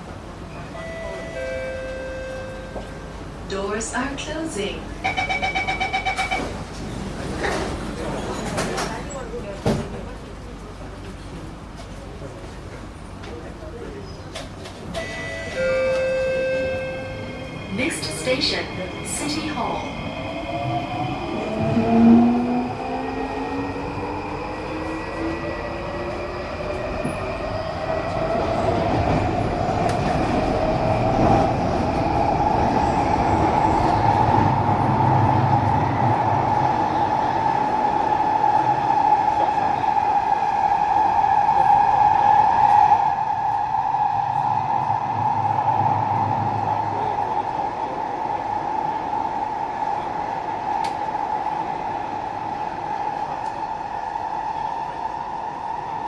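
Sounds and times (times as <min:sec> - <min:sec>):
train wheels rumbling on track: 0:02.4 - 0:56.0.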